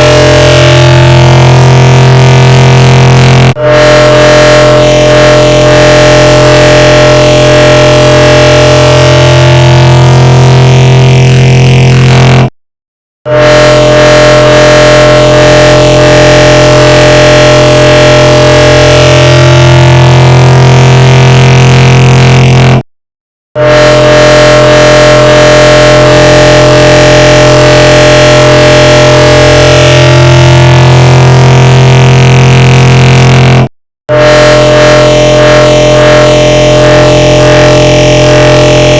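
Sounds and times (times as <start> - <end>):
distorted droning voice clips: 0.0 - 12.5, 13.4 - 22.8, 23.6 - 38.9.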